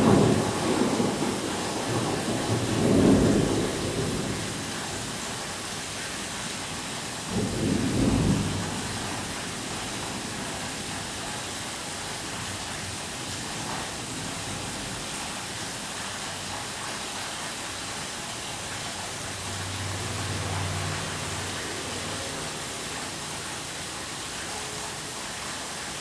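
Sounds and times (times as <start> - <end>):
low rumble of thunder: 0.0 - 5.5, 7.2 - 15.9
light rain hissing: 0.0 - 26.0.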